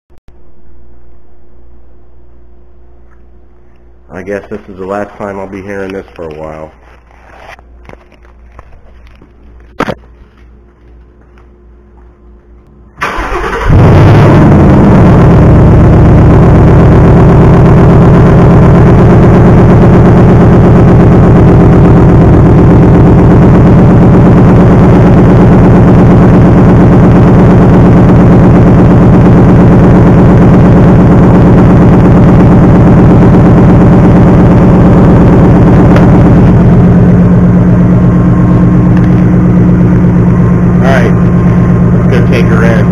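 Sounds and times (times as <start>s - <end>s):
car engine starting and idling: 12.9s - 42.9s.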